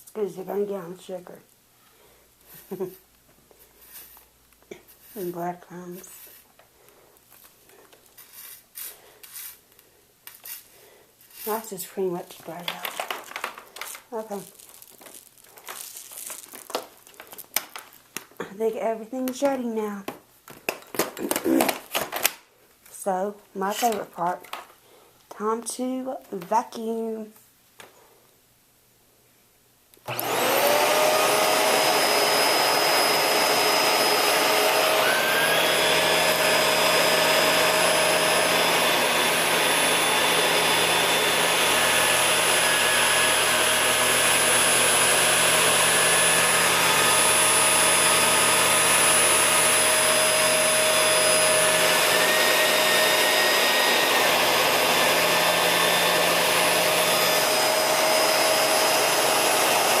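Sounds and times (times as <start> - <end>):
vacuum cleaner whining: 30.0 - 60.0.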